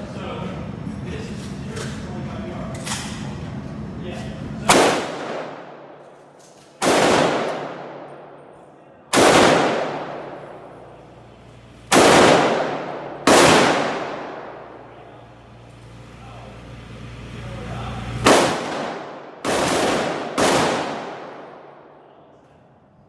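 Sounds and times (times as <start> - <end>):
pistol shots with echo: 4.7 - 6.1, 6.8 - 11.2, 11.9 - 15.1, 18.2 - 22.2.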